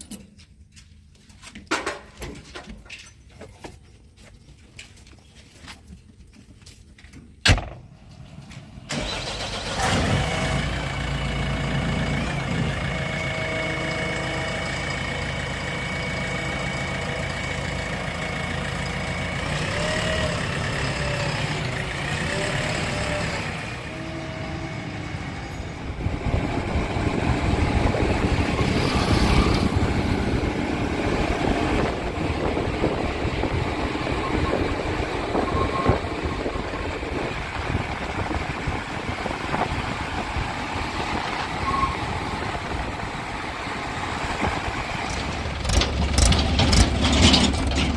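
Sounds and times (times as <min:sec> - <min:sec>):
diesel engine running: 0:07.8 - 0:47.9.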